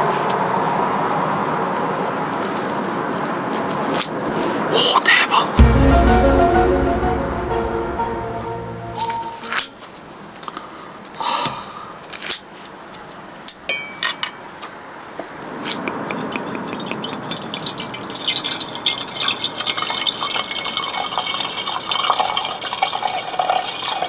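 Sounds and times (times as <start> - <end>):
water dripping and splashing: 16.0 - 24.0.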